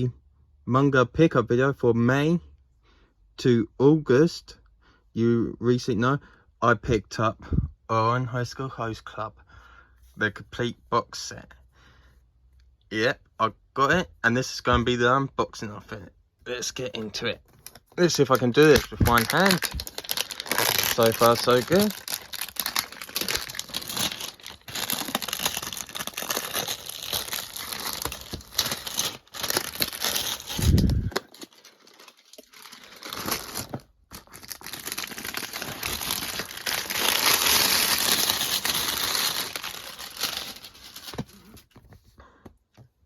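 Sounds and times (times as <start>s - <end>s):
packaging crinkling and tearing: 16.8s - 41.8s.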